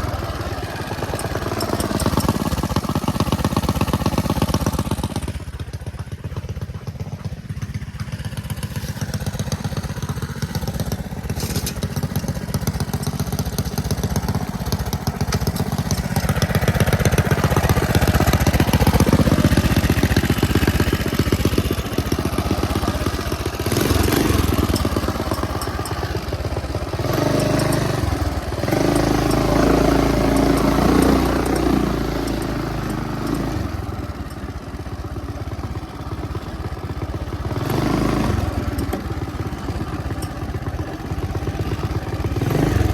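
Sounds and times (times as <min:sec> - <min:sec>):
small motorbike engine: 0:00.0 - 0:42.9.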